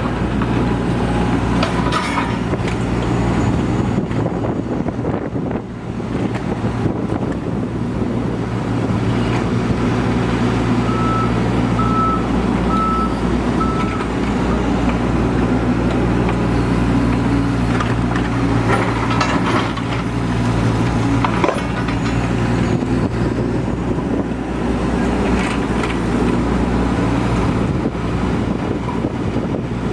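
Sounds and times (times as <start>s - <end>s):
excavator diesel engine running: 0.0s - 29.9s
travel alarm beeping: 10.9s - 14.0s.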